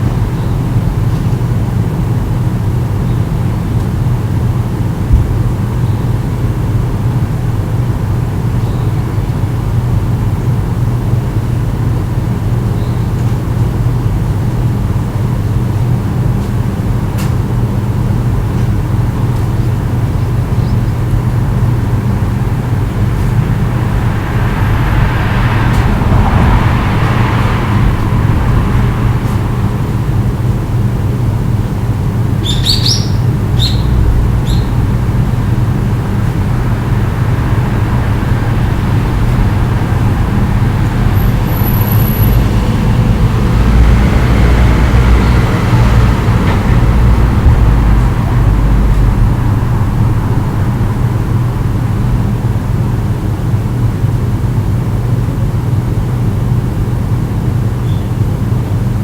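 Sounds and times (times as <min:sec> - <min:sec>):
road traffic hum: 0:00.0 - 0:59.0
vehicle passing: 0:18.4 - 0:55.2
bird chirps: 0:32.4 - 0:35.4, 0:57.8 - 0:58.1.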